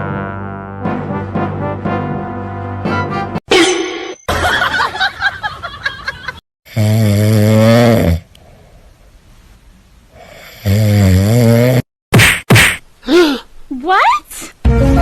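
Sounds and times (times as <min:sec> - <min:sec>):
loud snoring: 0:06.7 - 0:08.3, 0:10.2 - 0:11.9.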